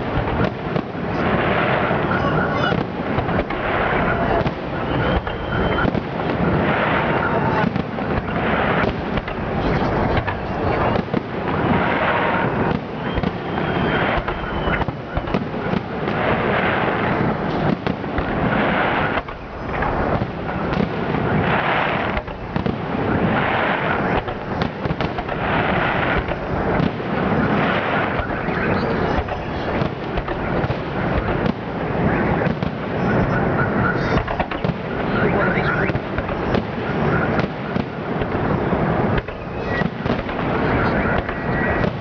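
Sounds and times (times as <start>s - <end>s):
fireworks bursts rumbling and crackling: 0.0s - 42.0s.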